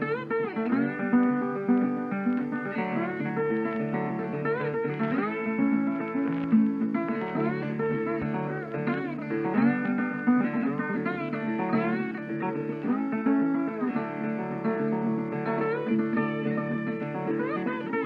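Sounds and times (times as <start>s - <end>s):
plucked acoustic guitar: 0.0s - 18.0s.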